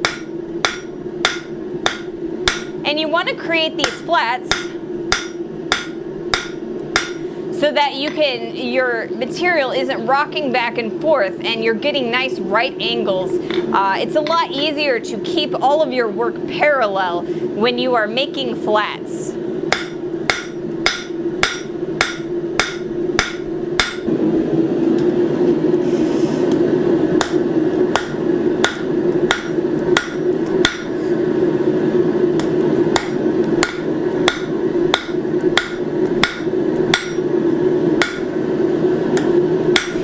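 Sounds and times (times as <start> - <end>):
hammer striking metal on anvil: 0.0 - 2.8, 3.8 - 7.2, 19.7 - 24.1, 27.2 - 27.4, 28.0 - 31.0, 32.4 - 37.2, 38.0 - 38.3, 39.2 - 40.0
steady low hum: 0.0 - 40.0.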